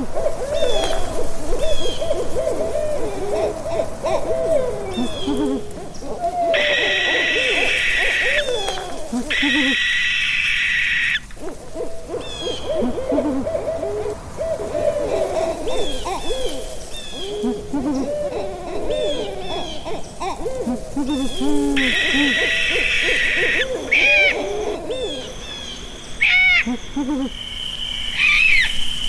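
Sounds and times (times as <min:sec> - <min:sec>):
owls hooting: 0:00.0 - 0:28.8
harsh owl screeches: 0:06.5 - 0:11.4, 0:20.6 - 0:24.8, 0:26.2 - 0:27.3, 0:28.1 - 0:28.8.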